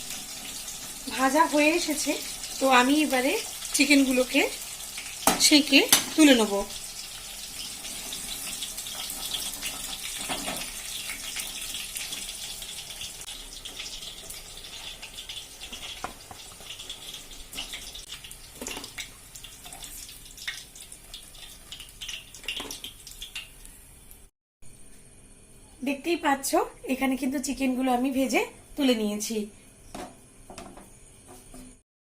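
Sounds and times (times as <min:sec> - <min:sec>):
chicken sizzling in hot oil: 0:00.0 - 0:24.3.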